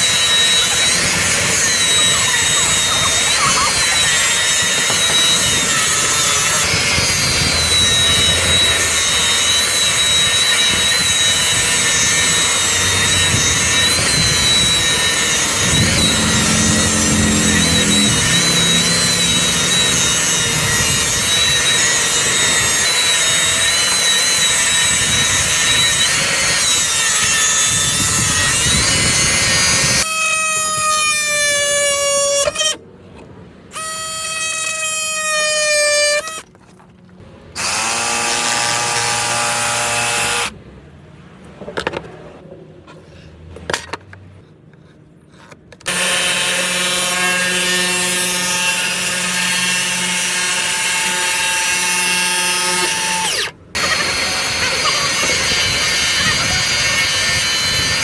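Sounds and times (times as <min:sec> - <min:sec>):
power saw cutting wood: 0:00.0 - 0:32.8, 0:33.7 - 0:36.4, 0:37.6 - 0:40.6, 0:45.8 - 0:58.0.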